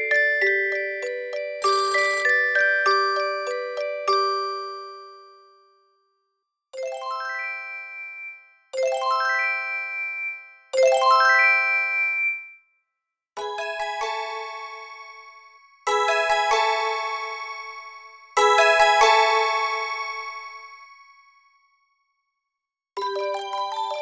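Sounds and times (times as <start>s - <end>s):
different chime tone: 1.6s - 3.6s, 11.4s - 12.5s.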